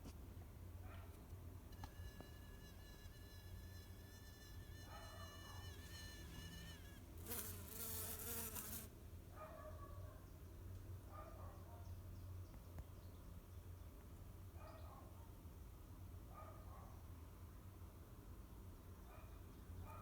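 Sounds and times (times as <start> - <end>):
insect high piercing whine: 1.8 - 7.0.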